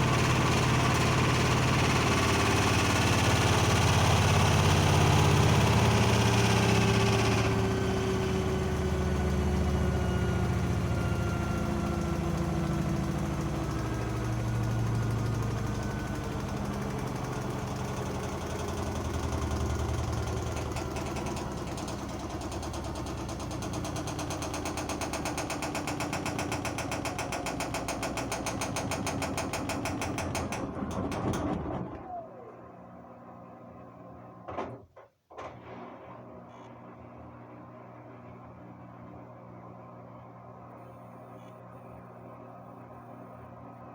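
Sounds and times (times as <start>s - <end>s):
washing machine drum spinning: 0.0s - 31.8s.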